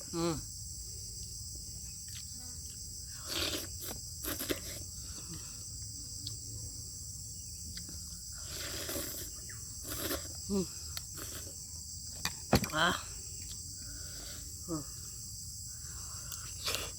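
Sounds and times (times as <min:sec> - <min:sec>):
insects chirring: 0:00.0 - 0:16.9
chewing and slurping: 0:02.1 - 0:05.2, 0:07.7 - 0:11.6.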